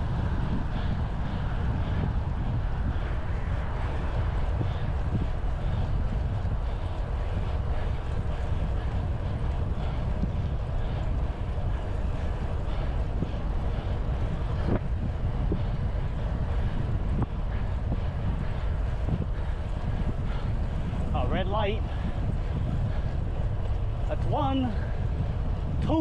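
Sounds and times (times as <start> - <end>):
road noise: 0.0 - 26.0
wind rushing over microphone: 0.0 - 26.0.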